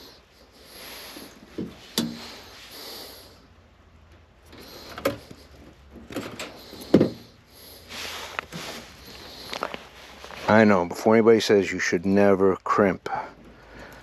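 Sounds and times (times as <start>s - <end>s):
soft breathy hissing: 0.0s - 3.7s, 6.5s - 10.6s.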